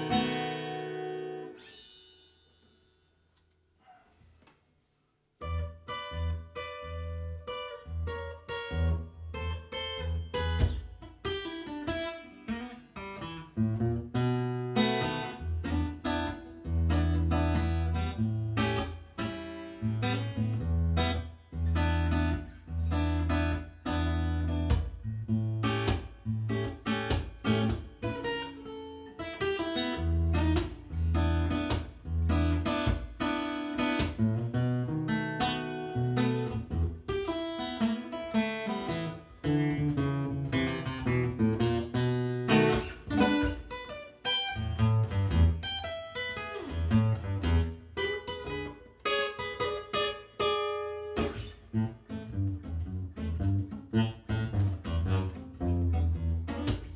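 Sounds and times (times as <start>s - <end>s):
acoustic guitar strummed and picked: 0.0s - 4.2s, 5.4s - 56.9s.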